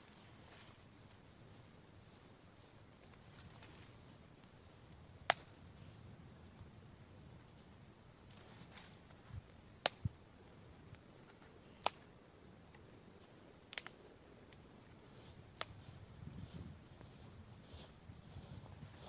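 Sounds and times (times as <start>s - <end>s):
dry wood cracking: 8.3s - 12.1s, 12.7s - 14.7s.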